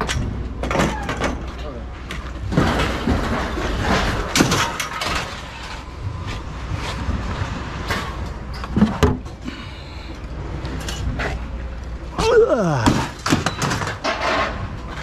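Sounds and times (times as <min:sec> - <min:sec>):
scrap metal knocks and clanks: 0:12.9 - 0:15.0.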